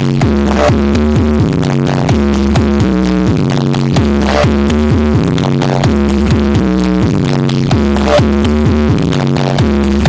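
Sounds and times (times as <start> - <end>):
loud electronic dance music: 0.0 - 10.0.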